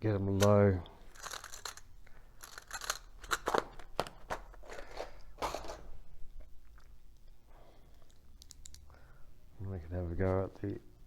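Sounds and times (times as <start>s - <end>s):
clips clicking and scraping: 0.4s - 3.8s.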